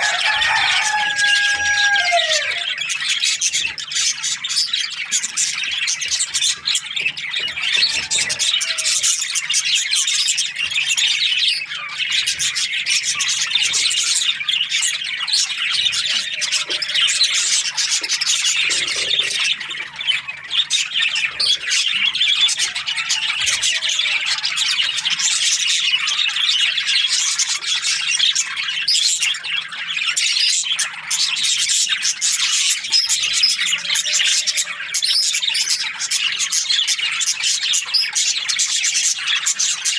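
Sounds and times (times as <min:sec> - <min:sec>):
flock of birds chirping: 0:00.0 - 0:39.9.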